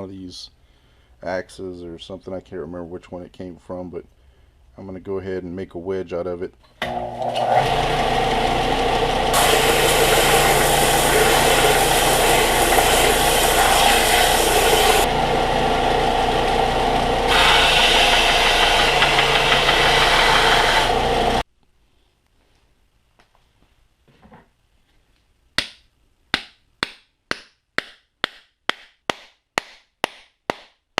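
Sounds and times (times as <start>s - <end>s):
power tool motor hum: 6.8s - 21.4s
harsh hiss of wood cutting: 9.3s - 15.1s, 17.3s - 21.0s.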